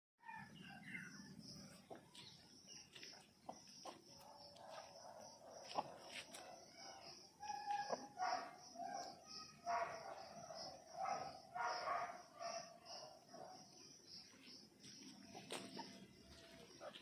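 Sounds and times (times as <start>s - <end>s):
faint animal calls: 5.5s - 13.5s.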